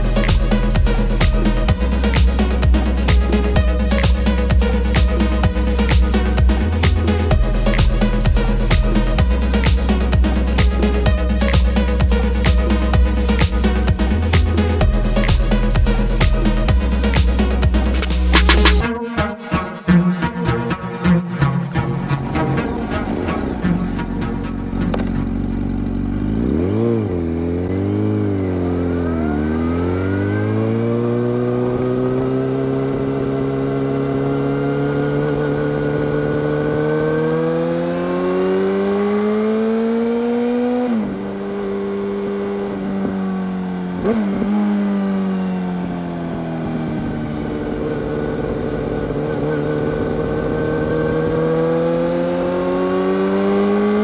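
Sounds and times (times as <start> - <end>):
motorcycle engine revving: 24.8 - 42.9.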